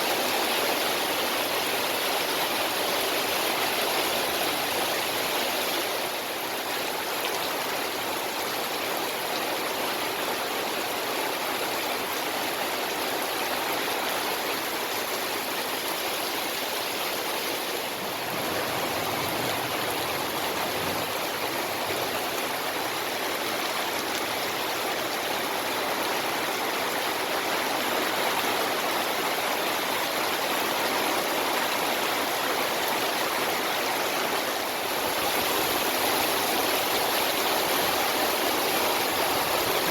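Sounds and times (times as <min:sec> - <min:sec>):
heavy rain hissing: 0:14.0 - 0:28.9, 0:32.6 - 0:39.9.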